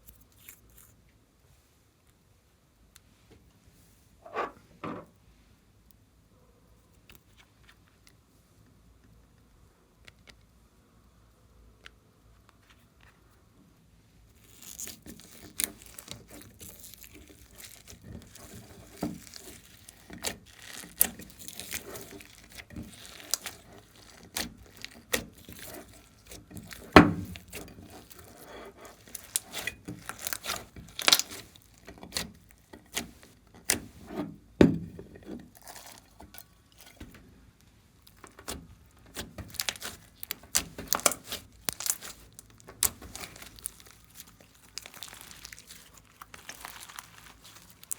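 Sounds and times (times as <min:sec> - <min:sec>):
slime squishing with sticky clicks: 0:14.3 - 0:34.8, 0:35.4 - 0:47.9.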